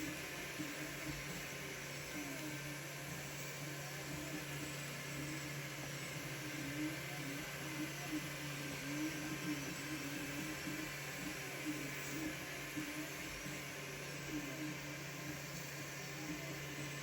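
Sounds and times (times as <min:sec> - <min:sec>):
steady hum and hiss: 0:00.0 - 0:17.0.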